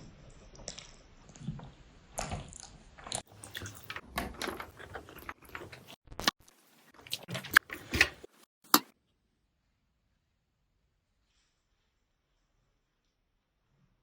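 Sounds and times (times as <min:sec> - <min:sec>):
biting and chewing food: 0:00.5 - 0:08.9.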